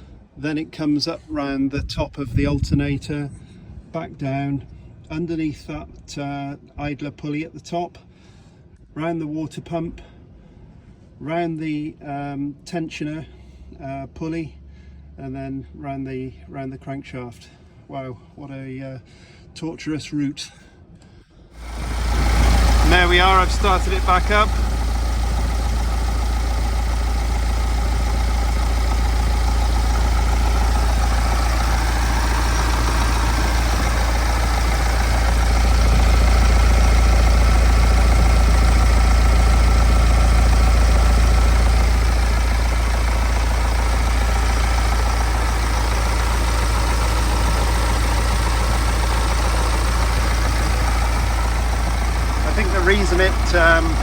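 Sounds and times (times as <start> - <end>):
diesel engine idling: 21.6 - 54.0.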